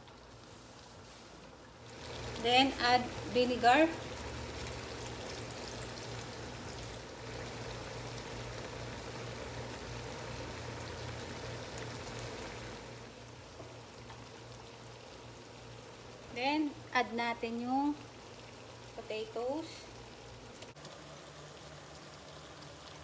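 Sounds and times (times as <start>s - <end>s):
pot simmering and bubbling: 0.0s - 23.0s.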